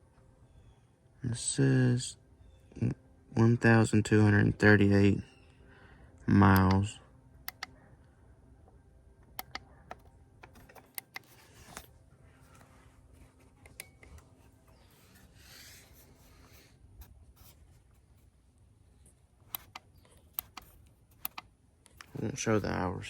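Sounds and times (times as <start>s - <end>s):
soft rustling rub: 11.3s - 18.3s.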